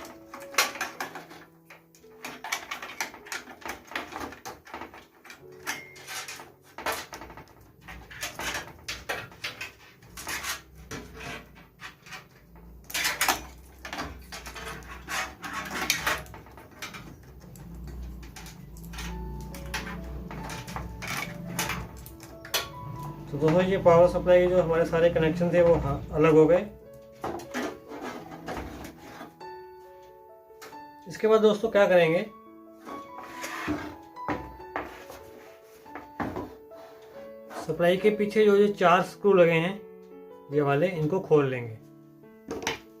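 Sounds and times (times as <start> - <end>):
cables rustling: 0.0 - 31.7.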